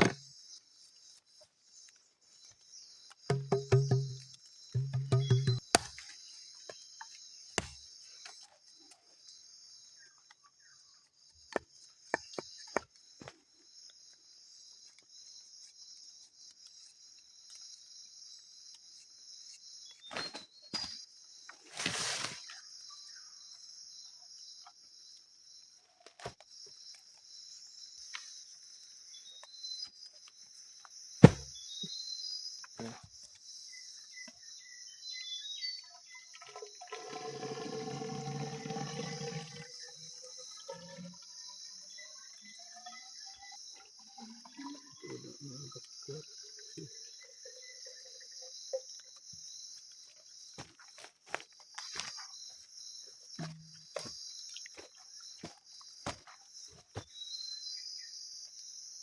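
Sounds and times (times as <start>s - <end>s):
crickets droning: 26.5s - 59.0s.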